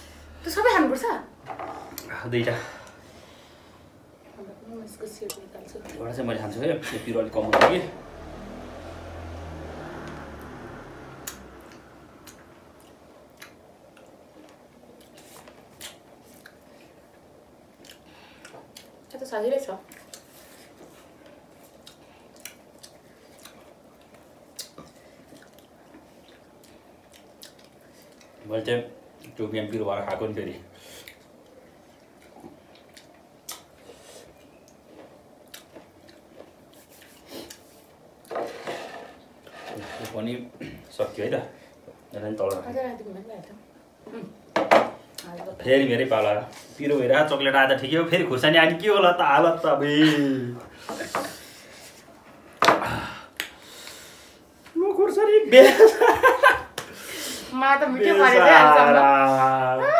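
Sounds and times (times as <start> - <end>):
faint chewing: 11.2 - 19.1, 19.8 - 28.4, 30.8 - 38.3.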